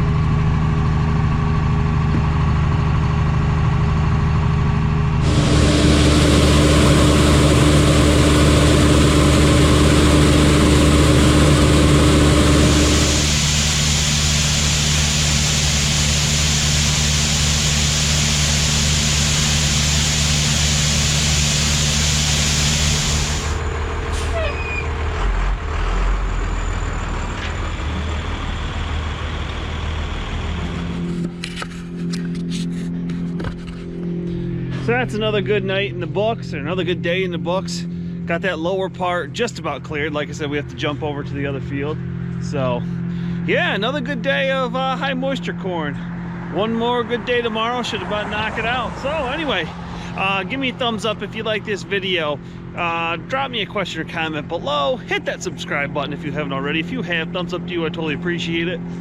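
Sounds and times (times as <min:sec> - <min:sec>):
truck engine running: 0:00.0 - 0:59.0
loud rushing hiss: 0:05.2 - 0:23.6
high-pitched drone: 0:05.2 - 0:24.6.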